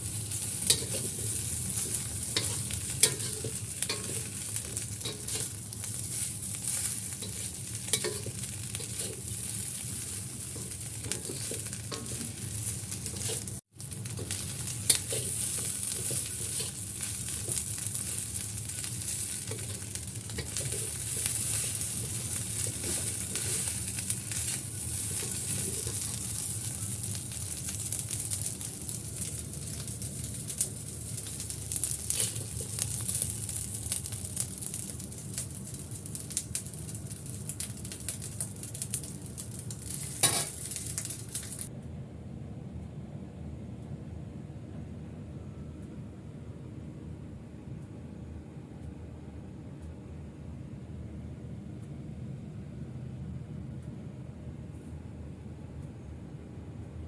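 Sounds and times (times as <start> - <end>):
rice sizzling in a hot pan: 0.0 - 41.7
spatula scraping and knocking pan: 6.6 - 9.3, 10.5 - 18.1.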